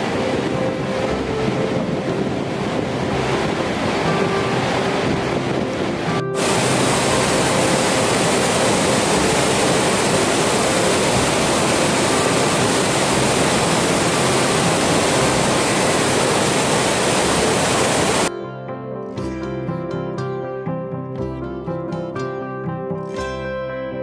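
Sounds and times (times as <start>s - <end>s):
waterfall roaring: 0.0s - 18.3s
plucked-string music: 0.0s - 24.0s.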